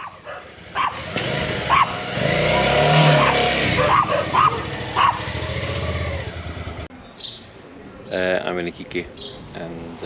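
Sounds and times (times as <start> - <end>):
motorcycle engine revving: 0.0 - 6.9.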